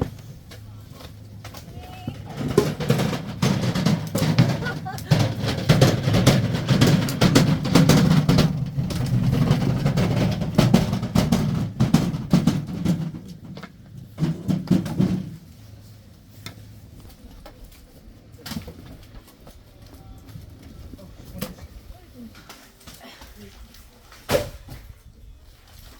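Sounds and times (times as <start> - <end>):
firewood logs knocking together: 0.0 - 15.5, 24.1 - 24.9
low rumble of handling: 0.0 - 25.9.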